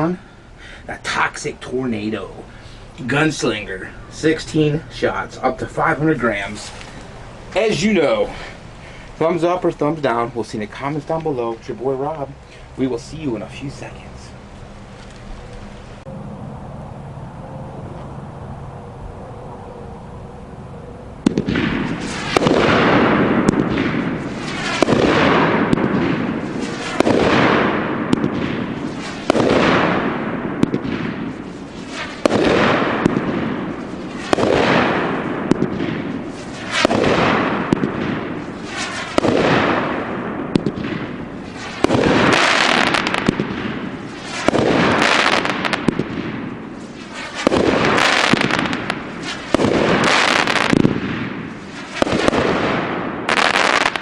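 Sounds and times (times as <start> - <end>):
firework shots: 21.2 - 54.0.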